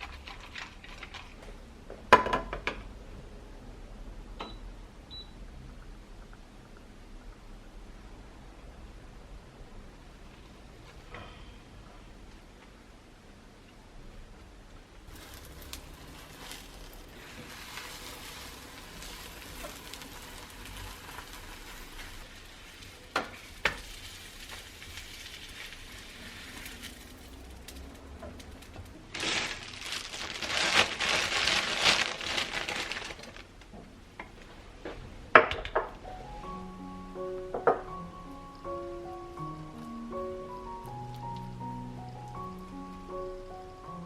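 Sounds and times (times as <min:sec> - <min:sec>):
food sizzling in a frying pan: 0:15.1 - 0:27.8.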